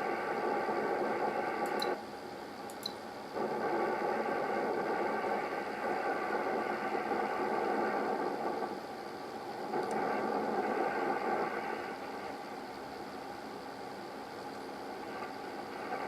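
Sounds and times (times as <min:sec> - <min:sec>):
radio receiver hiss: 0:00.0 - 0:16.0
clicks: 0:02.7 - 0:03.0.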